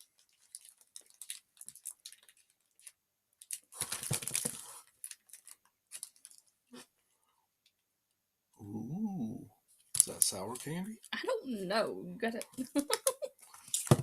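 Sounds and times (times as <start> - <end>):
plastic packaging crinkling: 0.0 - 6.5.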